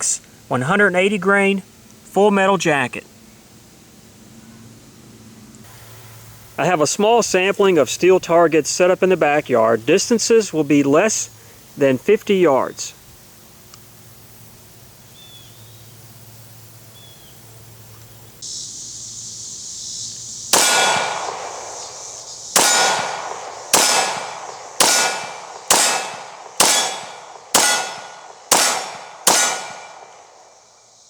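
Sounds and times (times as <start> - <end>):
pistol shots: 20.5 - 30.5
metallic ring of steel target: 20.6 - 21.7, 22.6 - 30.2.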